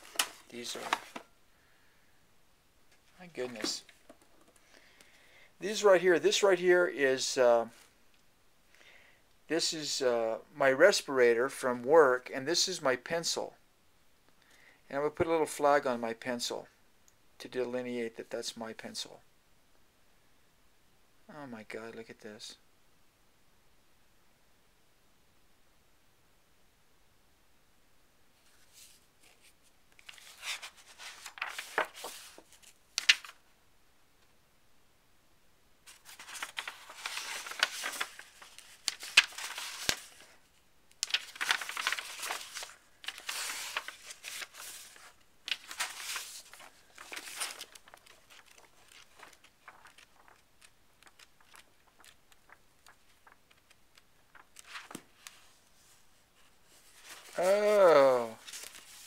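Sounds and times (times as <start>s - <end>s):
paper rustling and crinkling: 0.0s - 1.3s, 3.0s - 4.6s, 28.4s - 33.4s, 35.9s - 59.0s.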